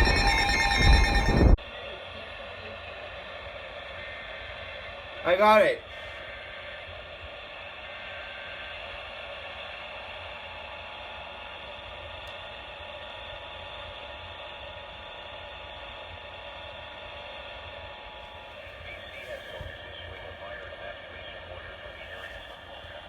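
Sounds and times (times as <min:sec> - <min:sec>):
faint whistle tones: 0:00.0 - 0:01.6
radio static and hiss: 0:18.6 - 0:23.0.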